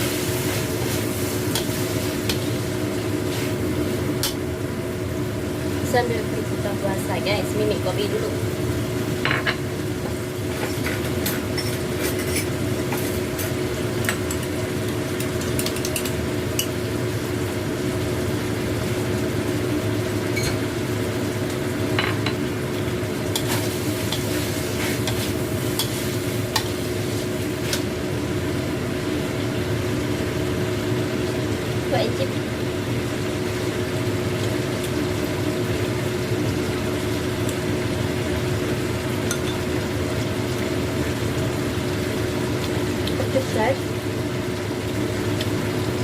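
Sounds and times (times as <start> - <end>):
food sizzling in a pan: 0.0 - 46.0
low hum with constant tone: 0.0 - 46.0.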